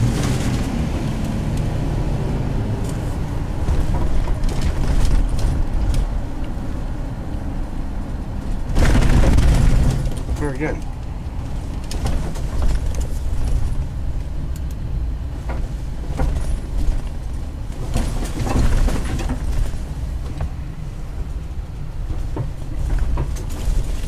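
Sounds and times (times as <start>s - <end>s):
car engine and road rumble: 0.0s - 24.0s
knocks and rattles: 3.5s - 6.2s, 8.4s - 13.8s, 15.4s - 20.6s, 22.0s - 24.0s.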